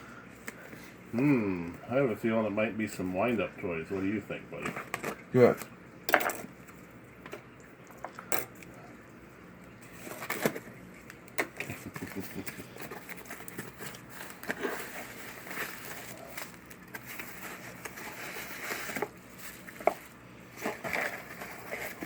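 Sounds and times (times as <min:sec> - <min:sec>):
package rustling and crinkling: 0:09.8 - 0:22.0.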